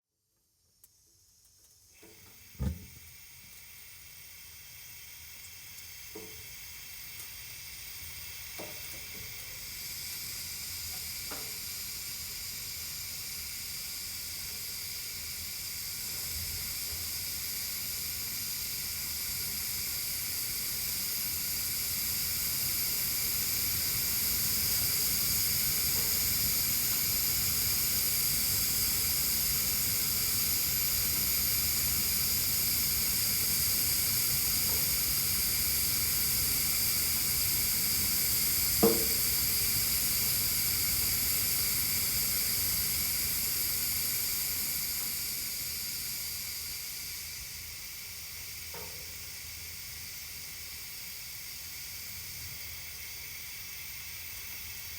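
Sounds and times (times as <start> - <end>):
gas hissing: 1.9 - 54.9.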